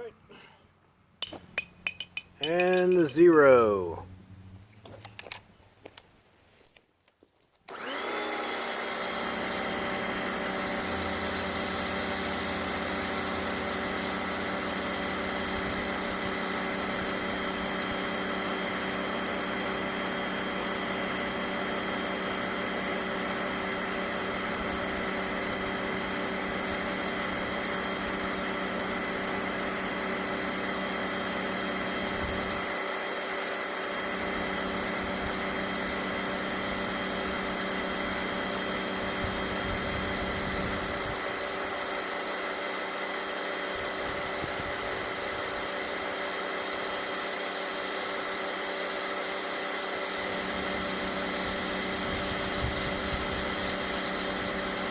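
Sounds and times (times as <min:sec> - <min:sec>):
pressure washer motor whine: 0:07.7 - 0:54.9
high-pressure water jet hiss: 0:38.7 - 0:54.9.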